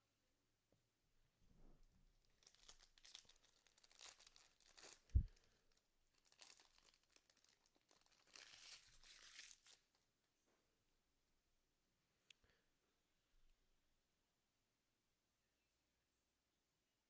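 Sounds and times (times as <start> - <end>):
foil wrapper crinkling and tearing: 2.2 - 10.0.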